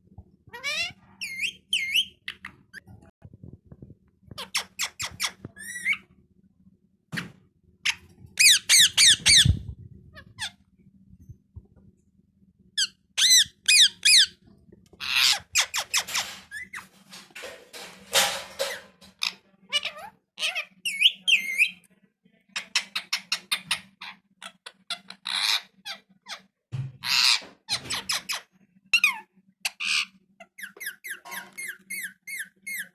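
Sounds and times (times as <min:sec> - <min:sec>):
parrot squawking: 0:00.5 - 0:02.4, 0:07.9 - 0:09.6, 0:12.8 - 0:14.3, 0:15.0 - 0:16.8
parrot screeching: 0:00.6 - 0:02.1, 0:12.8 - 0:14.3, 0:15.0 - 0:16.9, 0:27.0 - 0:32.9.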